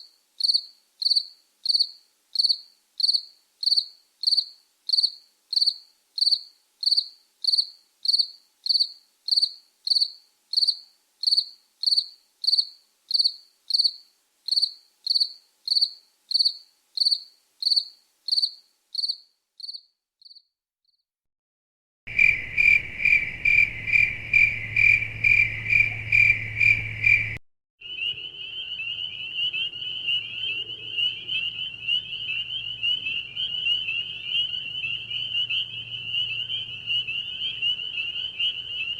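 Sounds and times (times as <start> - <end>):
crickets chirping: 0.0 - 20.5, 22.1 - 27.4
low hum: 22.1 - 27.4.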